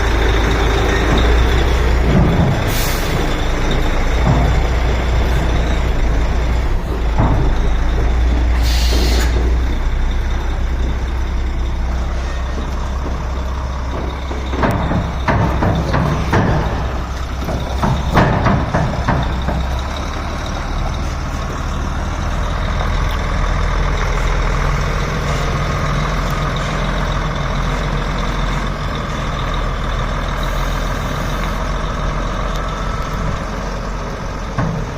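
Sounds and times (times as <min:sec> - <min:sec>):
heavy truck engine running: 0:00.0 - 0:34.9
sharp knocks and clicks: 0:03.6 - 0:11.8, 0:12.5 - 0:20.6.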